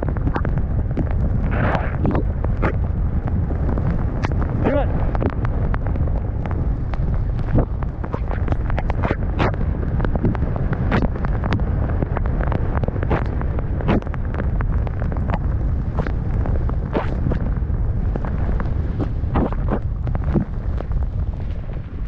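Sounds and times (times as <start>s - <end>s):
wind buffeting microphone: 0.0s - 22.0s
snowboard scraping snow: 1.4s - 2.2s.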